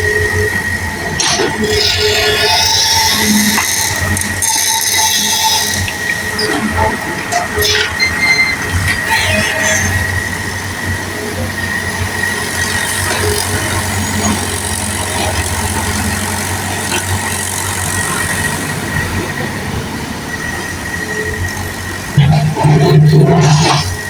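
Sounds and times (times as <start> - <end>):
excavator engine drone: 0.0 - 24.0
high whine: 17.7 - 24.0.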